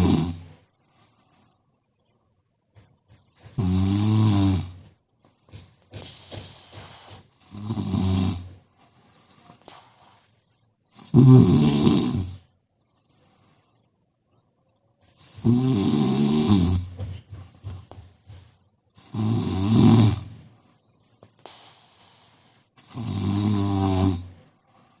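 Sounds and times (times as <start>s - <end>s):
person snoring: 0.0s - 0.6s, 3.4s - 4.9s, 6.0s - 8.6s, 10.9s - 12.5s, 15.2s - 17.0s, 19.0s - 20.4s, 21.5s - 25.0s
soft breathing out: 5.3s - 7.4s, 20.4s - 22.8s.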